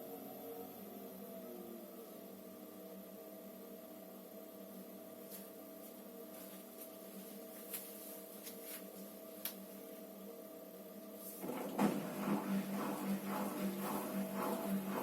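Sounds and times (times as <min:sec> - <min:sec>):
washing machine hum: 0:00.0 - 0:15.0
washing machine churning: 0:11.2 - 0:15.0.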